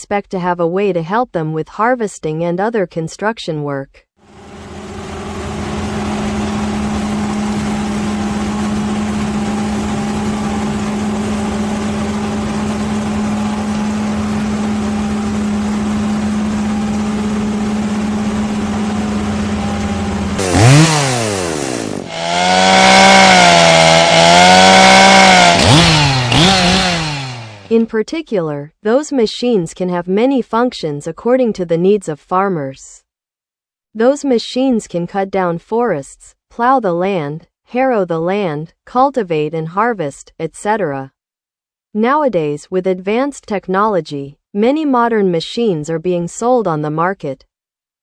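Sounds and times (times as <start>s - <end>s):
chainsaw engine revving: 4.4s - 27.8s.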